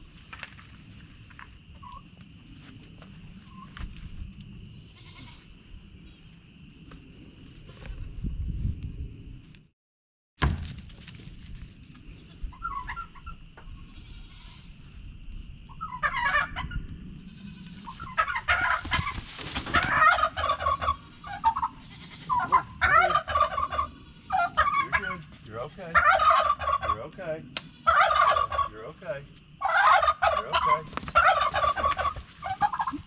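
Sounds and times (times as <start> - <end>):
turkey gobbling: 12.5 - 13.4, 15.8 - 16.8, 17.9 - 27.1, 27.8 - 28.8, 29.6 - 33.0.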